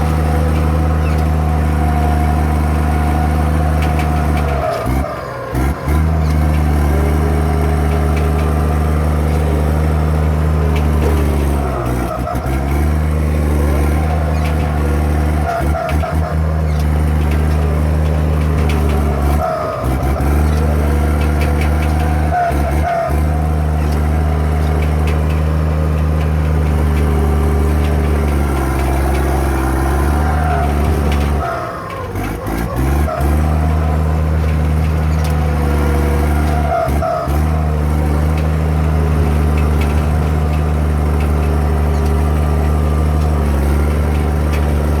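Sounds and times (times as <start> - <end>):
diesel engine running: 0.0 - 45.0.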